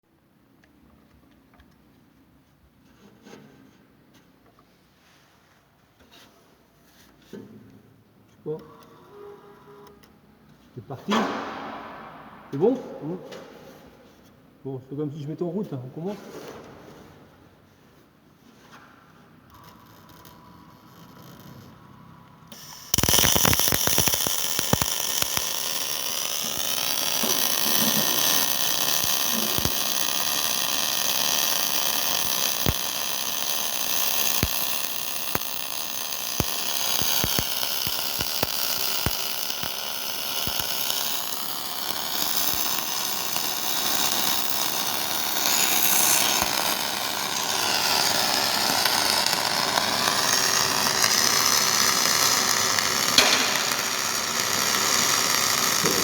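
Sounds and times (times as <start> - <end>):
welding arc hissing and crackling: 22.5 - 56.0.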